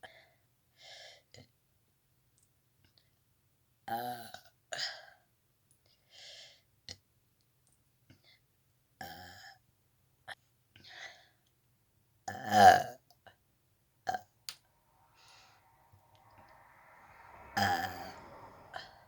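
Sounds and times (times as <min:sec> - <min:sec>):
girl burping: 0:12.3 - 0:13.0
airy breaths: 0:14.6 - 0:19.0.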